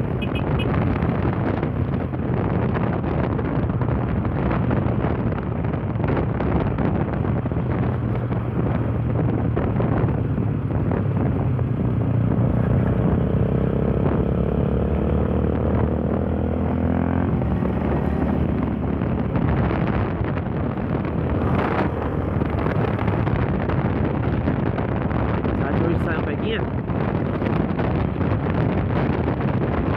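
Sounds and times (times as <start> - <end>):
motorcycle engine revving: 0.0 - 25.4
wind buffeting microphone: 0.0 - 29.9.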